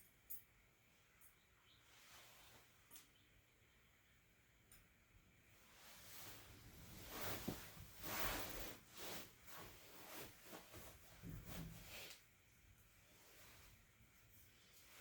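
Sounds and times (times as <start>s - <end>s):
soft rustling and brushing: 1.9s - 3.0s, 5.6s - 15.0s.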